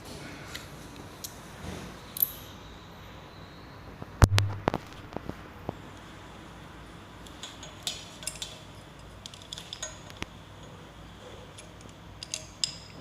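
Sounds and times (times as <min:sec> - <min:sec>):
small metal parts clinking: 0:02.2 - 0:02.5, 0:07.2 - 0:10.7, 0:11.5 - 0:13.0.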